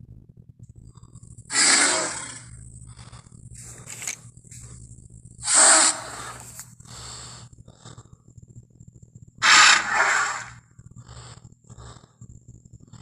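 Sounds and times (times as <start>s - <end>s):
steady low hum: 0.0s - 13.0s
dinosaur roaring calls: 1.5s - 2.5s, 5.4s - 6.4s, 9.4s - 10.6s.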